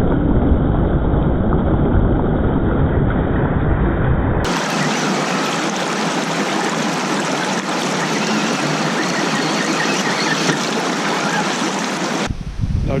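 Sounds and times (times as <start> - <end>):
waterfall rushing: 4.5 - 12.3.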